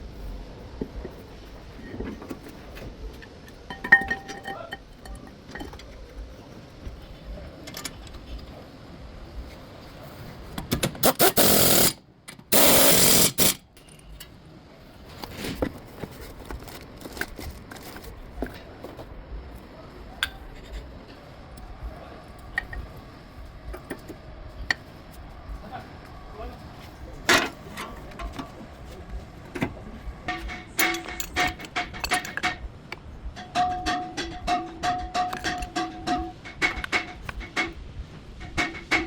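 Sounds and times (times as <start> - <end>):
power tool bursts: 11.0 - 13.6.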